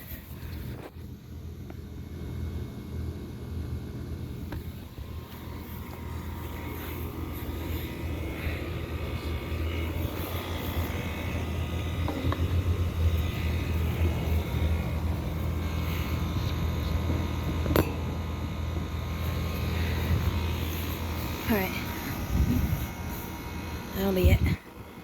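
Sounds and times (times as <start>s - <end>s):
compressor hum: 0.0s - 25.0s
fan whirring: 0.0s - 25.0s.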